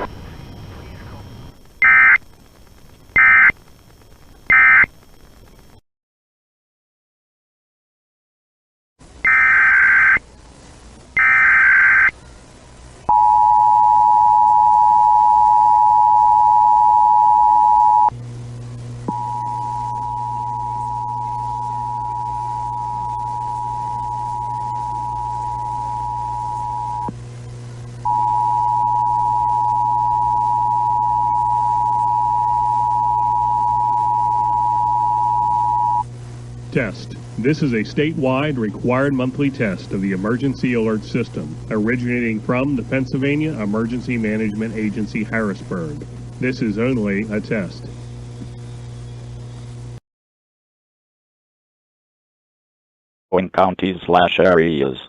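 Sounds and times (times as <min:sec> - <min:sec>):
screeching digital data tones: 0:00.0 - 0:02.3, 0:03.1 - 0:03.6, 0:04.4 - 0:05.7, 0:09.2 - 0:10.2, 0:11.2 - 0:12.2
low hum: 0:00.0 - 0:05.8, 0:10.2 - 0:50.0
two-tone attention signal: 0:13.1 - 0:18.1, 0:19.1 - 0:27.1, 0:28.1 - 0:36.0.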